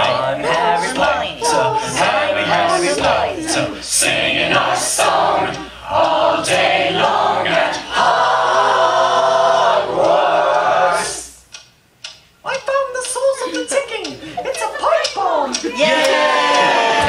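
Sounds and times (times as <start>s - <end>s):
crowd singing in chorus: 0.0s - 11.4s, 15.6s - 17.0s.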